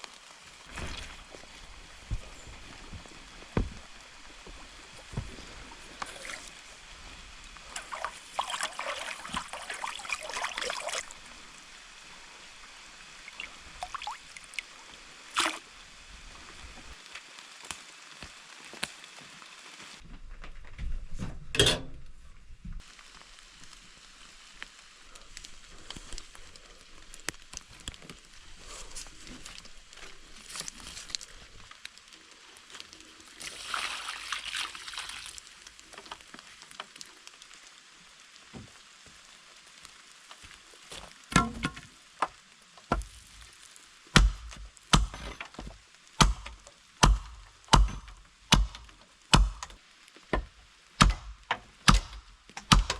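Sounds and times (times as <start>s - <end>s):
axe chopping wood: 44.2s - 45.3s, 46.2s - 49.7s, 50.4s - 52.9s.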